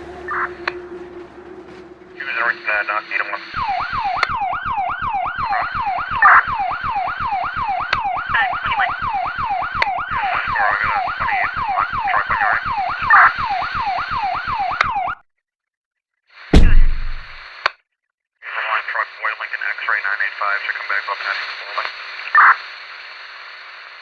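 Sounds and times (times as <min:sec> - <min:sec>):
police siren yelping: 0:00.0 - 0:15.1.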